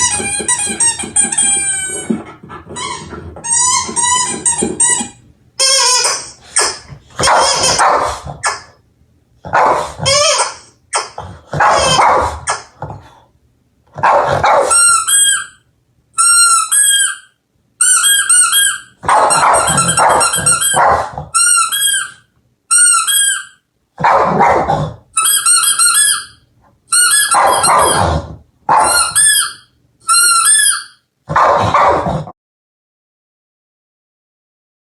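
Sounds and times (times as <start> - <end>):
squeaky toy squeaking: 0.0 - 8.8, 9.6 - 12.7, 14.5 - 15.6, 16.2 - 23.6, 25.2 - 31.0
dog barking: 5.8 - 8.7, 9.4 - 12.6, 14.0 - 14.8, 19.0 - 21.2, 27.2 - 28.1, 28.7 - 29.2, 31.3 - 32.2.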